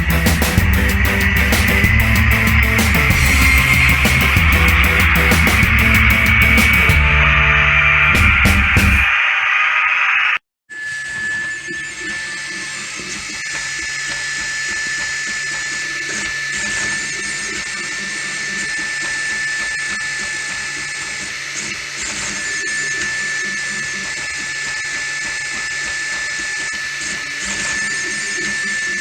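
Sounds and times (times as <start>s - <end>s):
low mechanical buzz: 0.0s - 9.1s
printer stepper motor whine: 0.0s - 29.0s.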